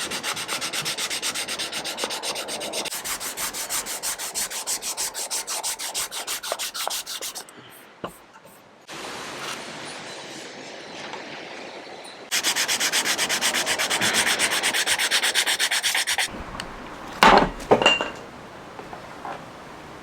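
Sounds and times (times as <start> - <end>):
sandpaper scraping wood: 0.0 - 8.6, 12.3 - 16.3
knife clattering on hard surface: 17.4 - 18.2.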